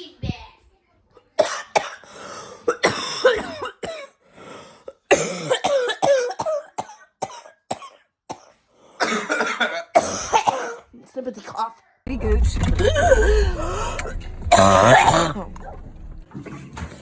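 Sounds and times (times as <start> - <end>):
person coughing: 2.7 - 4.2, 5.1 - 10.9, 13.0 - 15.8.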